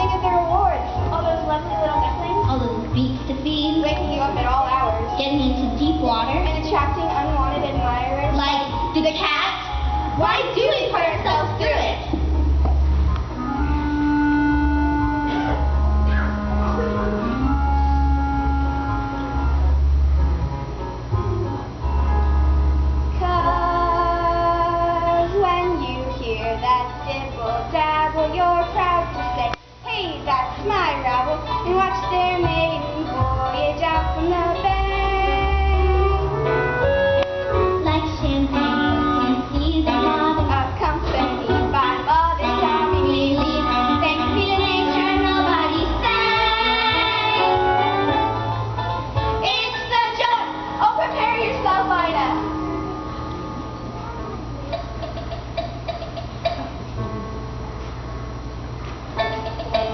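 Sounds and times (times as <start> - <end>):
instrumental accompaniment: 0.0 - 59.9
young voices singing: 37.8 - 48.1.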